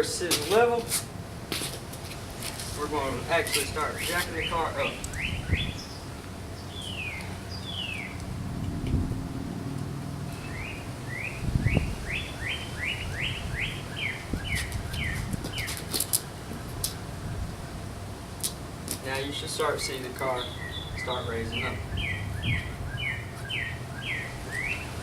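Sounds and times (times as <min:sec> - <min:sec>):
songbird chirping: 0:03.9 - 0:08.3, 0:10.3 - 0:15.8, 0:19.3 - 0:25.0
low rumbling: 0:04.9 - 0:12.4, 0:20.5 - 0:24.2.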